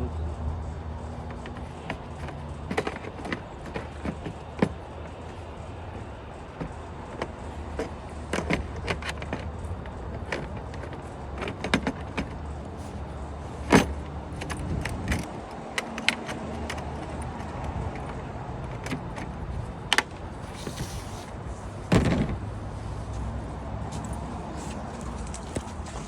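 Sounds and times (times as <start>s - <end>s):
scattered clicks and knocks: 1.2s - 12.6s, 13.6s - 20.2s.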